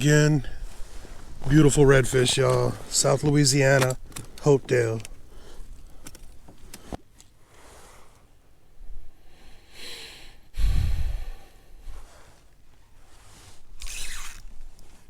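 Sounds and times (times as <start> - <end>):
man breathing heavily: 5.2 - 8.3, 9.1 - 12.5
air rumble on microphone: 10.6 - 12.2.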